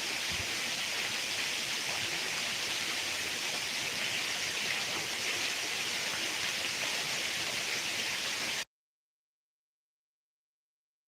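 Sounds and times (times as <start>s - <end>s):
heavy rain falling: 0.0s - 8.6s.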